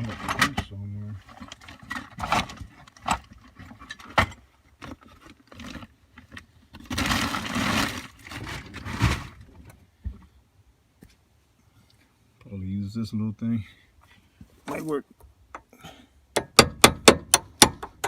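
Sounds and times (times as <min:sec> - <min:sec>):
tools scraping and rattling: 0:00.0 - 0:09.8.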